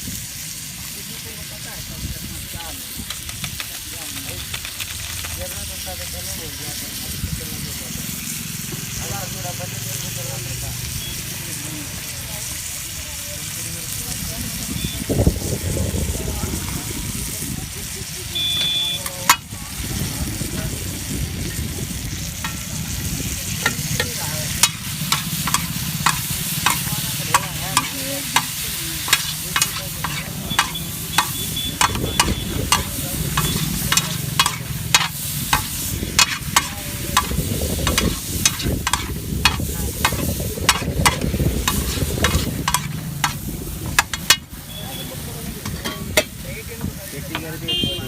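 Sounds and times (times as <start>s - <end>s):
corn sizzling in a pan: 0.0s - 48.0s
metal spatula scraping a pan: 23.6s - 44.6s.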